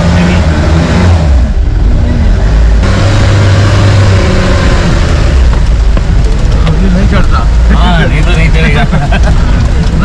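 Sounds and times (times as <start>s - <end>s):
vehicle engine revving: 0.0s - 10.0s.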